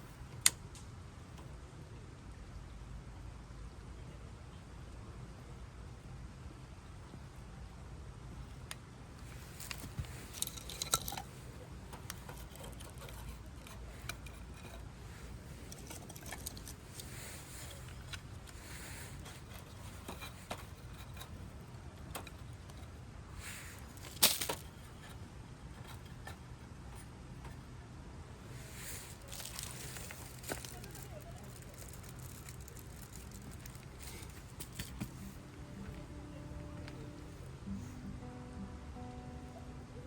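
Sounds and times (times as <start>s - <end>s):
steady low hum: 0.0s - 40.0s
light clicks and knocks of handling: 8.4s - 27.8s, 28.4s - 37.6s
sharp clatter: 9.2s - 26.4s.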